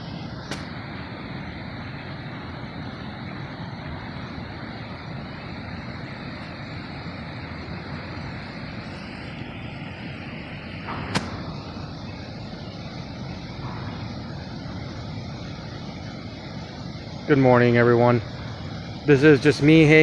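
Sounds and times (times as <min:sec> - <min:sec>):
sharp click: 0:00.5 - 0:00.7, 0:10.9 - 0:11.7.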